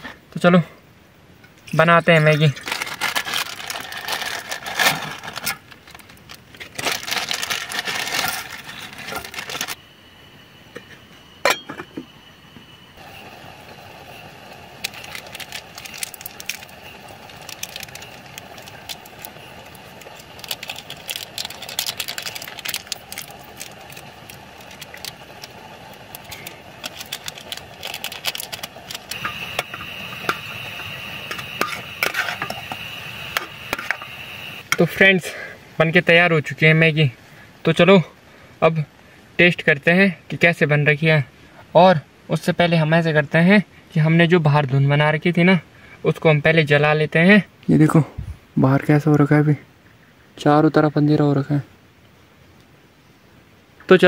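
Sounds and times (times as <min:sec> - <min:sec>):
stove burner hissing: 0:01.4 - 0:38.4
wrapper crinkling: 0:02.3 - 0:09.8, 0:14.8 - 0:30.4
pot and utensil knocks: 0:11.4 - 0:12.0.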